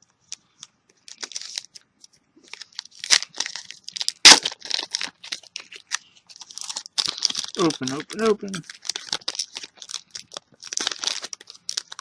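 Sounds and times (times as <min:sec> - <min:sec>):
plastic wrapper crinkling: 0:00.2 - 0:12.0
plastic wrapper ripping: 0:01.0 - 0:12.0.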